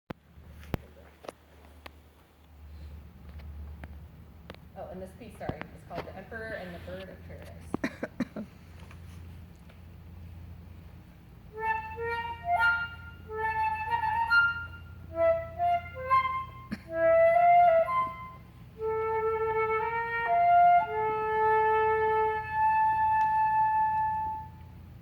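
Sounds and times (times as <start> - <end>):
solo flute melody: 11.5 - 25.0.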